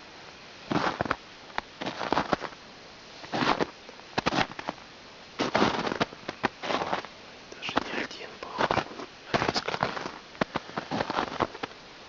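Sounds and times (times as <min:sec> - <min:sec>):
footsteps crunching through snow: 0:00.7 - 0:01.2, 0:01.8 - 0:02.6, 0:03.2 - 0:04.8, 0:05.4 - 0:07.1, 0:07.7 - 0:11.8.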